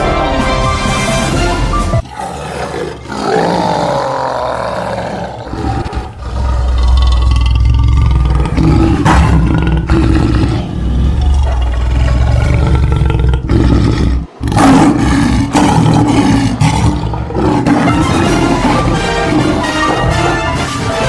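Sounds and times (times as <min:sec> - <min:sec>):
background music: 0:00.0 - 0:04.2, 0:13.4 - 0:21.0
creature roaring: 0:02.0 - 0:19.6.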